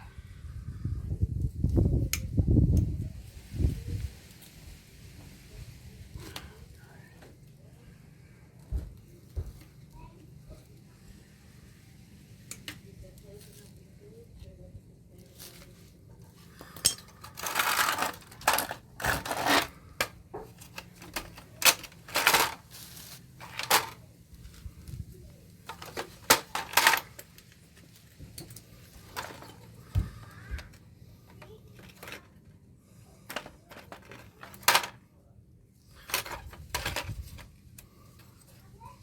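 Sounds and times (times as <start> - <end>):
metal parts clinking: 16.6 - 22.7, 23.4 - 24.0, 25.7 - 27.3
scraping rattles: 16.6 - 24.0, 25.7 - 27.3.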